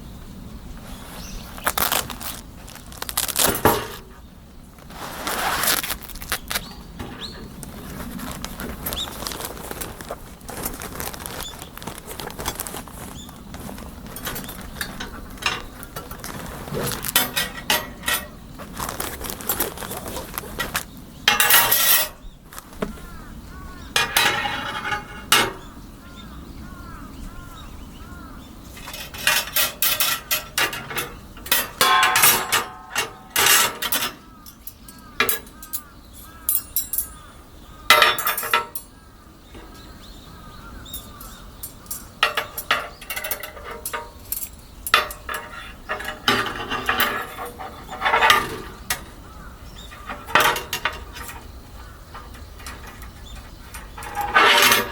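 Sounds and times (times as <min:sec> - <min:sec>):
metal cookware clinking: 0:14.0 - 0:18.4, 0:21.3 - 0:22.2, 0:24.0 - 0:25.7, 0:28.8 - 0:37.3, 0:37.9 - 0:38.9, 0:40.8 - 0:54.9.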